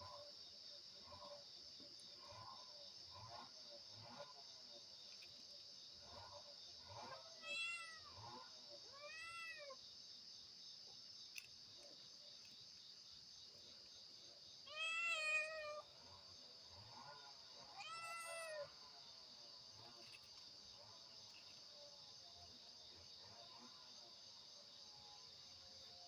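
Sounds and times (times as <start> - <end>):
crickets droning: 0.0 - 26.0
cat meowing: 7.4 - 8.1, 8.9 - 9.8, 14.7 - 15.8, 17.7 - 18.7.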